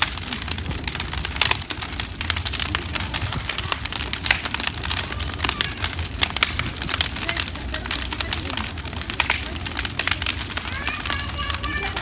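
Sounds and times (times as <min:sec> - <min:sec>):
wood bonfire crackling: 0:00.0 - 0:12.0.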